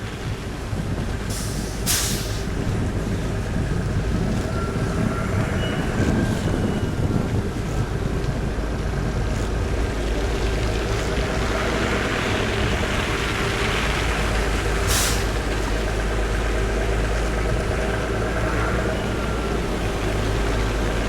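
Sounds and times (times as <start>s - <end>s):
heavy vehicle engine running: 0.0s - 21.0s
air brake hiss: 1.3s - 2.5s, 14.9s - 15.4s.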